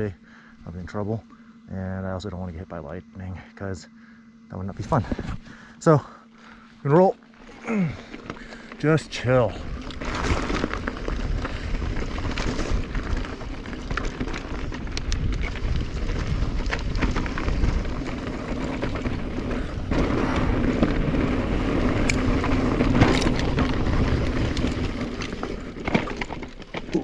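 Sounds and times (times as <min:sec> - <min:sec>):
bike tyres rolling over dirt: 0:04.8 - 0:27.0
bike rattling and clicking: 0:07.4 - 0:27.0.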